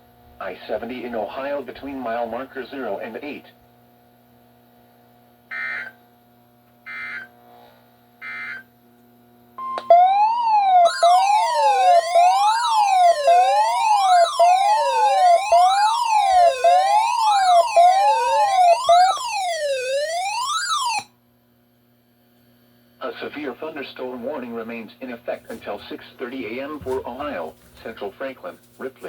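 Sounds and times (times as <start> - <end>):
high attention tone: 9.6 - 21.0
siren sweeping up and down: 9.6 - 21.1
data bursts: 10.8 - 21.0.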